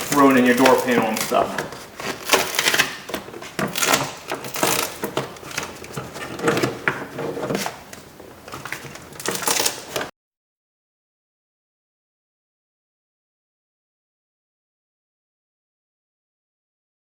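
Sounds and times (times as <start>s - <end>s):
plastic sheet crinkling as peeled: 0.0s - 10.1s.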